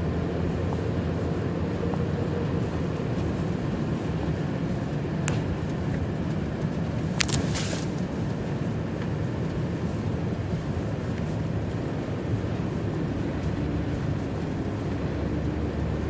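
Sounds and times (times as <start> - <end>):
car driving on highway: 0.0 - 16.0.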